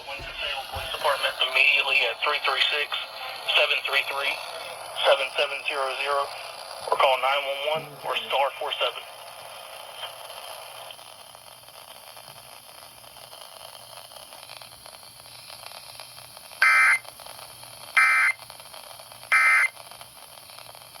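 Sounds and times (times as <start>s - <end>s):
faint radio hiss: 0.0s - 21.0s
harsh digital data bursts: 16.6s - 17.0s.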